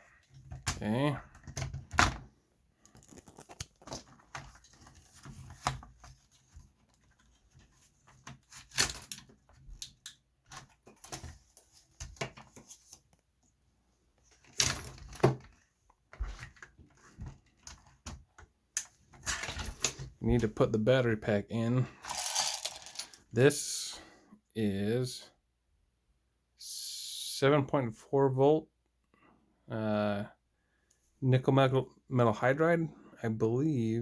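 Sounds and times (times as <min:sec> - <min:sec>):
rifle parts clattering: 0:22.0 - 0:23.3
rifle parts clicking and rattling: 0:22.1 - 0:23.3.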